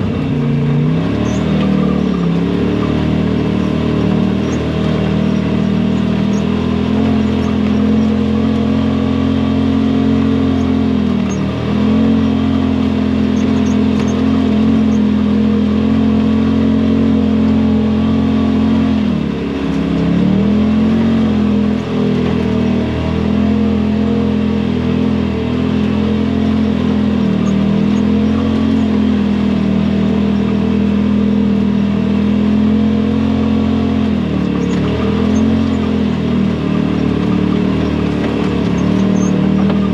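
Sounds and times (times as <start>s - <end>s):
utility vehicle engine revving: 0.0s - 39.9s.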